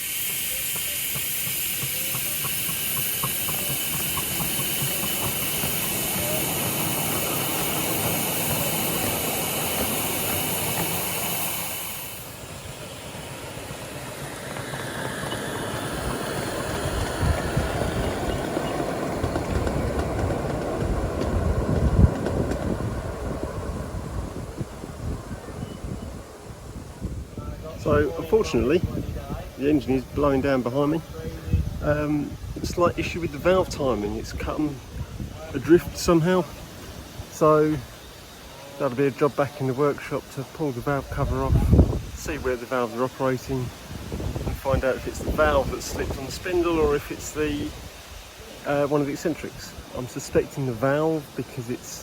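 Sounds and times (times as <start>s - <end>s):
loud hiss of escaping steam: 0.0s - 52.0s
wind rumble on microphone: 16.6s - 37.2s, 41.0s - 42.5s, 43.6s - 48.3s.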